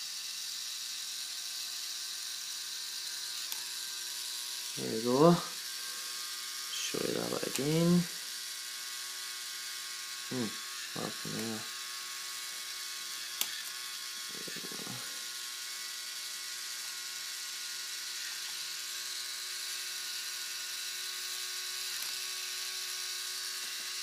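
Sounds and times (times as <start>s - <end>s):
electric motor whirring: 0.0s - 24.0s.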